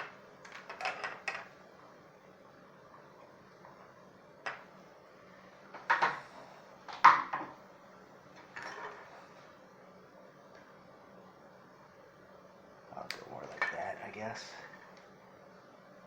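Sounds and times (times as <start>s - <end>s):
small objects clattering on work surface: 0.0s - 1.6s, 8.4s - 9.2s.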